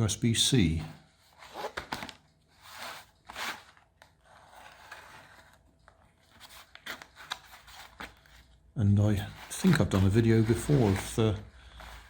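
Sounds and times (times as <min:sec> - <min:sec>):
parcel packaging rustling: 0:09.2 - 0:12.0.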